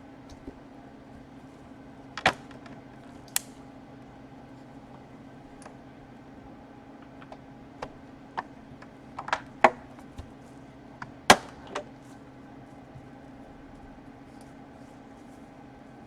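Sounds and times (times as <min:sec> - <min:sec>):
laptop casing clicks and knocks: 0:02.2 - 0:03.5, 0:08.4 - 0:10.0.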